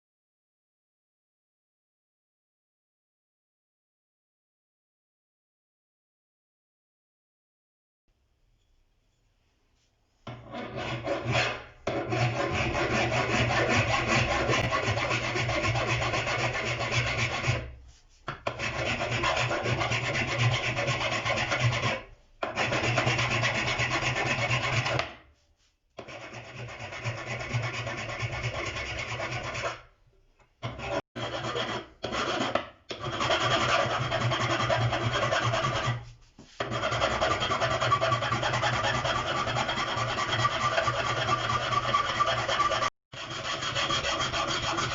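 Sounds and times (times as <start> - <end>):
chisel scraping against file: 10.2 - 25.2, 26.0 - 44.9.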